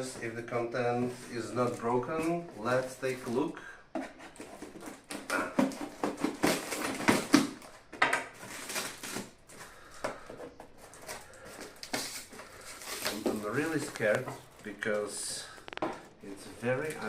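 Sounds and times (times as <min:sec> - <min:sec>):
cardboard box scraping and knocking: 0:03.9 - 0:07.6.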